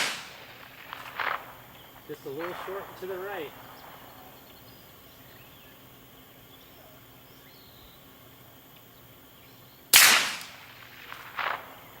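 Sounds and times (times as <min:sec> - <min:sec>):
suppressed pistol shot: 0:00.0 - 0:01.6, 0:10.0 - 0:11.9
faint outdoor background: 0:00.0 - 0:12.0
faint bird chirps: 0:01.6 - 0:10.0.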